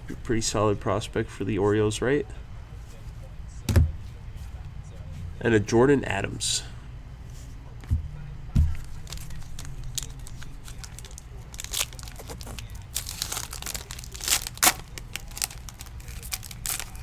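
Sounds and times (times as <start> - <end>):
foil wrapper crinkling: 8.7 - 17.0
foil wrapper ripping: 8.8 - 17.0.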